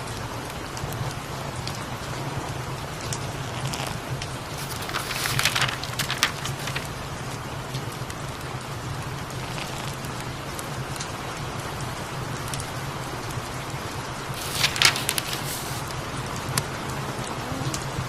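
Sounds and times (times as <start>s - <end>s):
steady rain: 0.0s - 18.0s
crackles and rustles: 3.1s - 7.4s, 14.3s - 16.6s.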